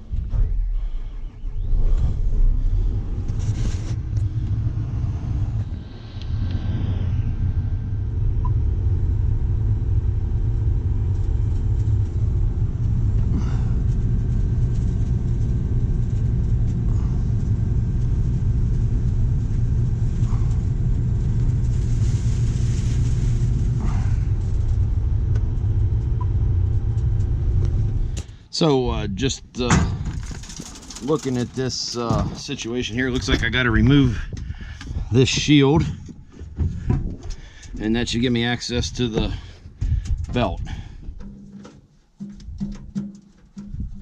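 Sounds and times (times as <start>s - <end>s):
strong wind buffeting microphone: 0.0s - 28.2s, 28.8s - 41.2s, 42.4s - 44.0s.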